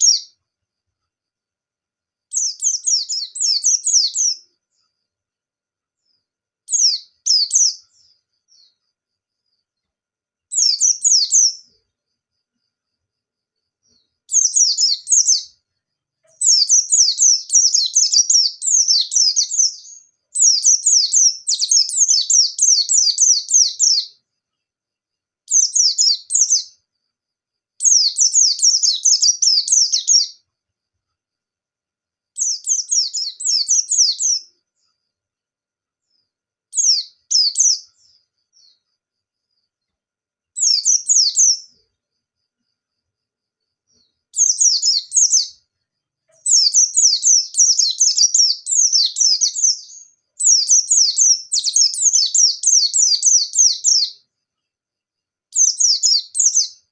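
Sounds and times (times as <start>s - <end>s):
bird chattering song: 0.0s - 0.4s, 2.3s - 4.9s, 6.0s - 8.8s, 10.5s - 11.8s, 13.9s - 15.6s, 16.2s - 24.3s, 25.5s - 26.8s, 27.8s - 30.5s, 32.4s - 34.9s, 36.7s - 38.9s, 40.6s - 41.8s, 44.0s - 45.7s, 46.3s - 54.3s, 55.5s - 56.9s.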